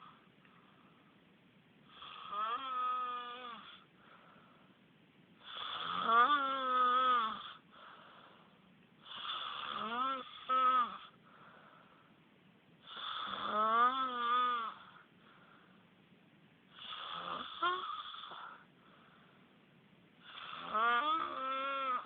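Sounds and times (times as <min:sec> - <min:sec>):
quiet breathing: 0:00.0 - 0:13.8, 0:14.4 - 0:22.0
person snoring: 0:01.9 - 0:03.8, 0:05.4 - 0:07.6, 0:09.0 - 0:11.2, 0:12.9 - 0:15.0, 0:16.8 - 0:18.6, 0:20.2 - 0:22.0.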